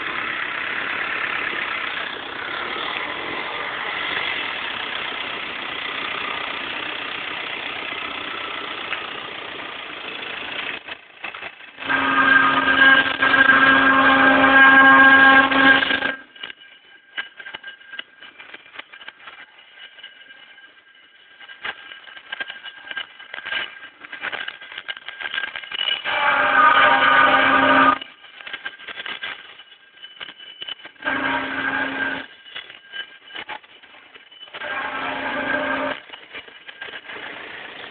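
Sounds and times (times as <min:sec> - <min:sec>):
diesel engine running: 0:00.0 - 0:10.8
loud steady-pitched tone: 0:11.4 - 0:37.8.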